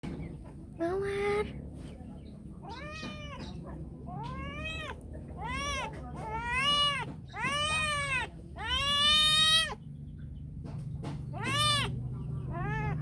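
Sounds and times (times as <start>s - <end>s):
cat meowing: 2.6s - 9.8s, 11.3s - 13.0s.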